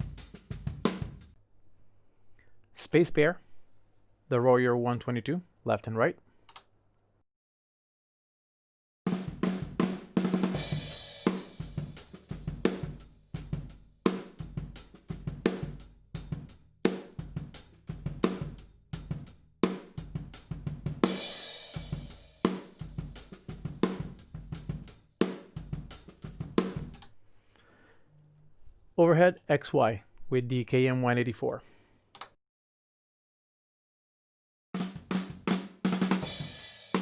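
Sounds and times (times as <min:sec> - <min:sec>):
drum kit groove: 0:00.0 - 0:01.4, 0:09.1 - 0:27.1, 0:34.8 - 0:37.0.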